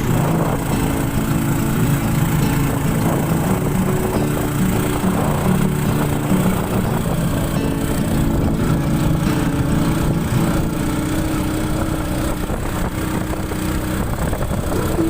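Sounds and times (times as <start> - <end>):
vehicle engine running: 0.0 - 15.0.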